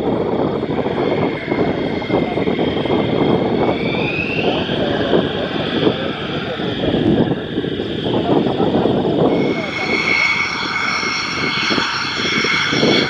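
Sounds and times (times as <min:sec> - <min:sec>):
high engine whine rising: 0:00.0 - 0:13.0
jet engine running: 0:00.0 - 0:13.0.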